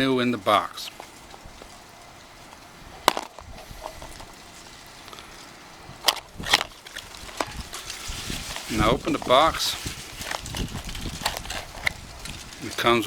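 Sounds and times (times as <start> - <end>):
wind rumble on microphone: 2.6 - 4.8, 5.7 - 13.0.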